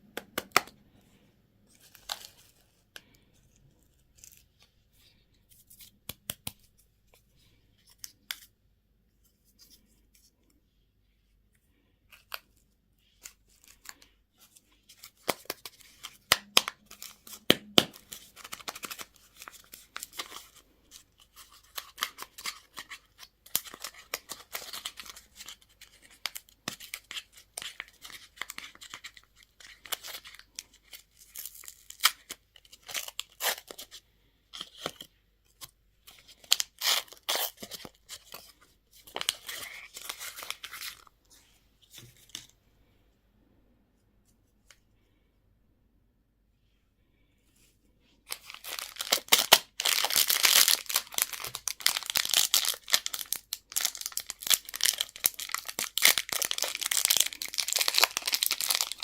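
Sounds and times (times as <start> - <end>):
candy wrappers tearing and crinkling: 14.9 - 34.0, 34.6 - 41.1, 48.3 - 59.0.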